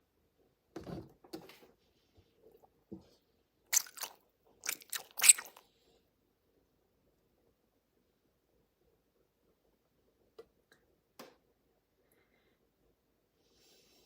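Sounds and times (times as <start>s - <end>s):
slime squelching: 3.7s - 5.6s.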